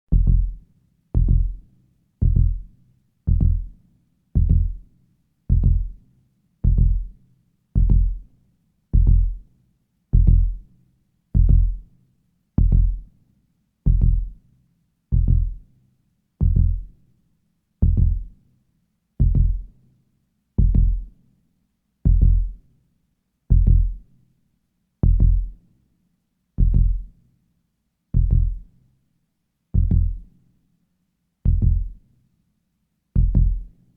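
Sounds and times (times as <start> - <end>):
heartbeat thumps: 0.1 - 0.6, 1.2 - 1.6, 2.2 - 2.7, 3.3 - 3.7, 4.4 - 4.8, 5.5 - 6.0, 6.6 - 7.1, 7.8 - 8.2, 9.0 - 9.4, 10.2 - 10.6, 11.4 - 11.8, 12.6 - 13.0, 13.9 - 14.3, 15.2 - 15.6, 16.4 - 16.9, 17.8 - 18.3, 19.2 - 19.7, 22.1 - 22.5, 23.5 - 24.0, 25.0 - 25.5, 26.6 - 27.1, 28.2 - 28.6, 29.8 - 30.2, 31.5 - 32.0, 33.2 - 33.7.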